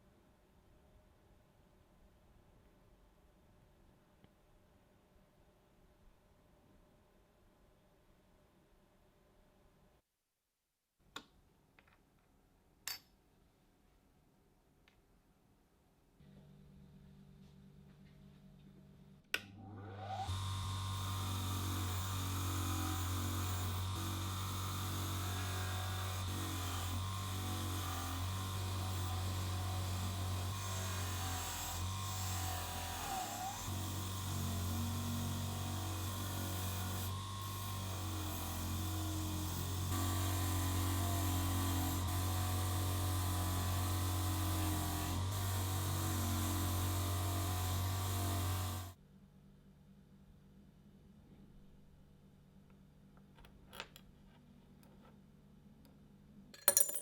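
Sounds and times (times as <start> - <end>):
power tool motor humming: 20.0 - 49.0.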